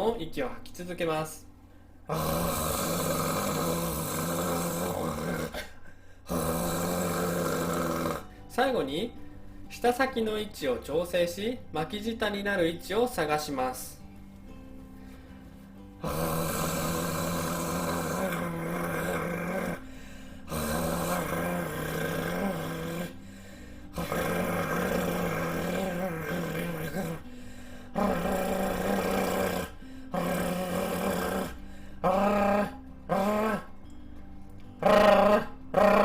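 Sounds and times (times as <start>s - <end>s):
man rolling tongue trills: 2.1s - 8.3s, 16.0s - 19.8s, 20.4s - 23.2s, 23.9s - 27.2s, 27.9s - 34.0s, 34.8s - 36.0s.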